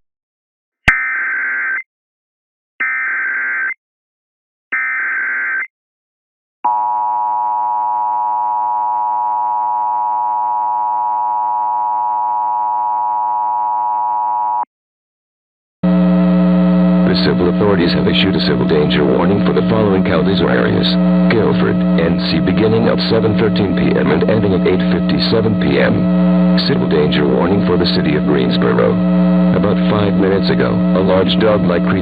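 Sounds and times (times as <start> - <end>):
steady attention tone: 15.8 - 32.0.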